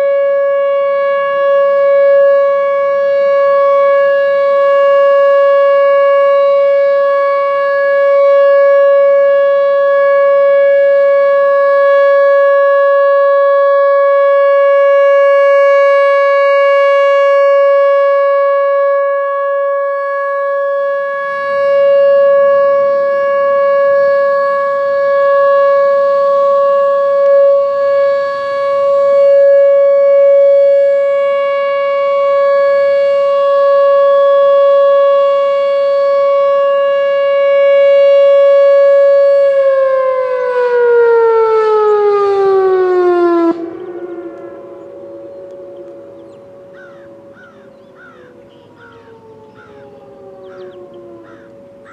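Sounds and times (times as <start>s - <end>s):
steady warning siren tone: 0.0s - 51.9s.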